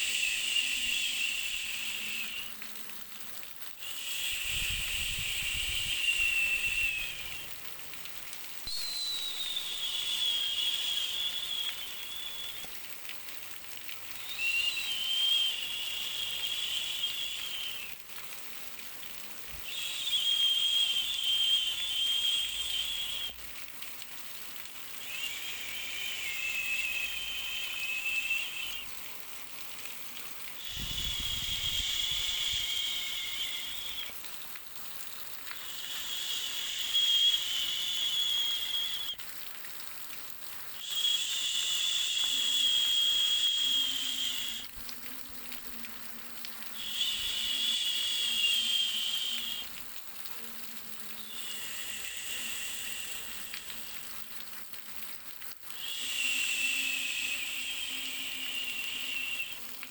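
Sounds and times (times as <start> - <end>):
faint steady hiss: 0.0 - 59.9
insects buzzing: 3.8 - 7.5, 8.8 - 12.7, 14.2 - 18.0, 25.0 - 29.0, 30.6 - 34.4, 35.1 - 39.2, 40.8 - 49.7, 50.3 - 54.0, 55.8 - 59.9.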